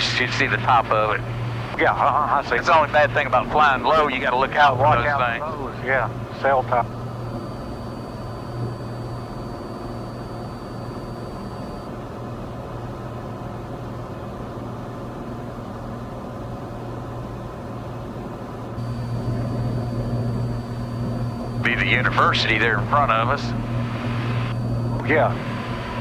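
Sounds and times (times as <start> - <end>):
faint high whine: 0.0 - 11.9, 18.8 - 26.0
airplane engine and propeller drone: 0.0 - 26.0.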